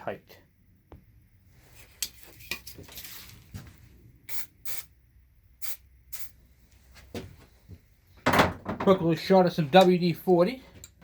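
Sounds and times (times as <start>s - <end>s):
aerosol spray hissing: 4.3s - 4.9s, 5.6s - 6.4s.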